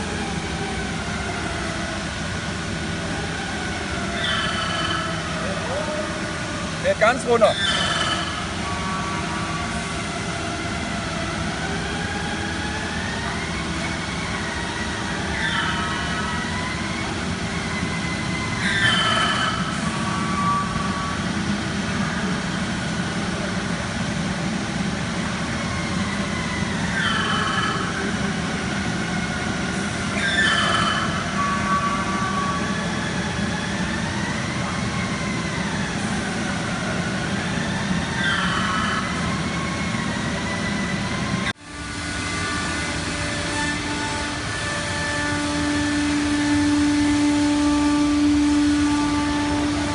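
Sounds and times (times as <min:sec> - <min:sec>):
axis drives whining: 0:00.0 - 0:49.9
machine steady hum: 0:00.0 - 0:49.9.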